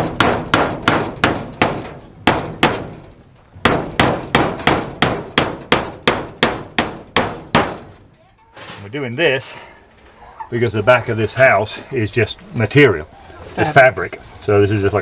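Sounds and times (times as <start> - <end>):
hammer driving nails into wood: 0.0 - 3.0, 3.6 - 7.9.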